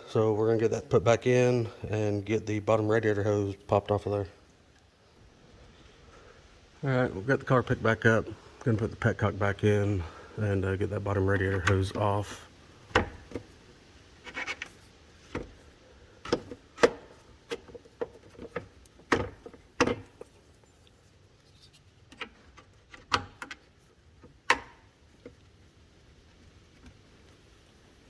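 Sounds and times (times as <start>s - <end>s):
clicks and knocks on plastic drain valve: 12.9s - 13.4s.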